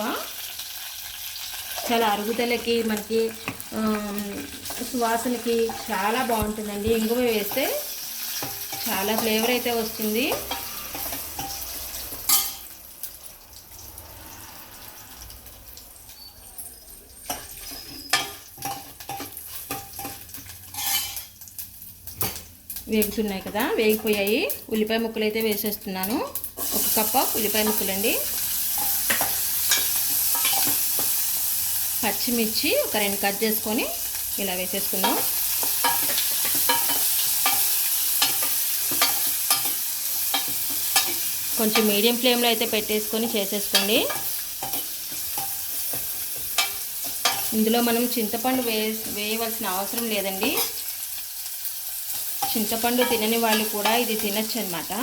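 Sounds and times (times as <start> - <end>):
spices sizzling in hot oil: 0.0 - 55.0
spoon scraping a pot: 17.3 - 21.3.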